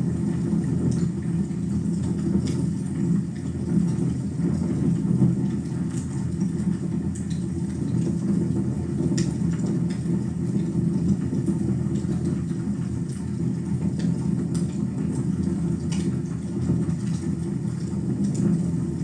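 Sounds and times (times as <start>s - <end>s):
fire roaring in a fireplace: 0.0s - 19.0s.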